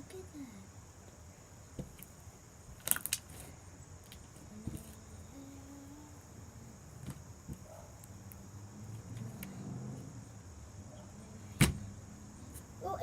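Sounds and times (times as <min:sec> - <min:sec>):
faint steady high whine: 0:00.0 - 0:13.0.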